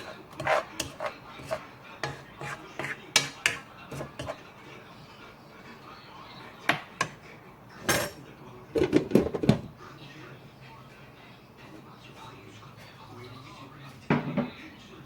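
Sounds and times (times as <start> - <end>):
utensils clinking against dishes: 0.0 - 4.4, 7.8 - 9.2.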